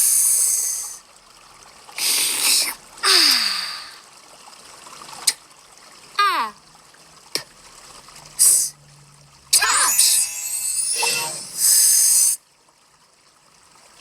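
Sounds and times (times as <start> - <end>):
cartoon hisses: 11.1 - 12.4.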